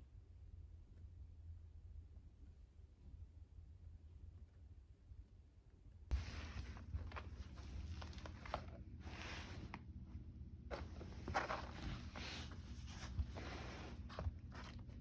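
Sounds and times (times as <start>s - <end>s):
flowers and leaves rustling: 6.1s - 15.0s.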